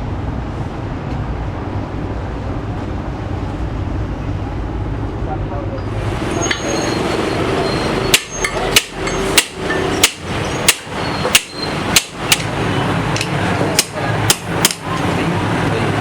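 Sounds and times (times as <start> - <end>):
steady hum: 0.0 - 16.0
hammer striking metal: 7.9 - 14.9.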